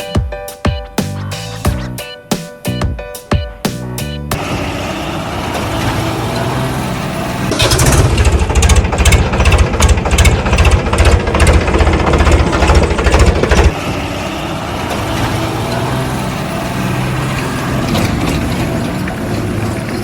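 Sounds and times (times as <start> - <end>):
heavy vehicle engine chugging: 4.0 - 20.0.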